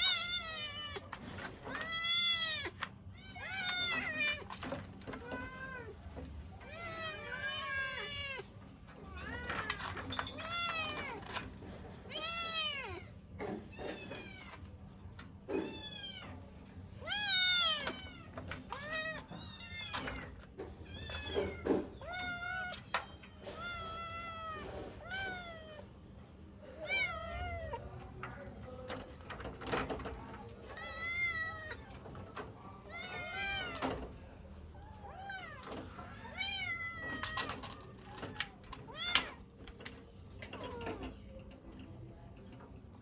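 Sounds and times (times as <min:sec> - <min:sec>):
kittens meowing: 0:00.0 - 0:11.4.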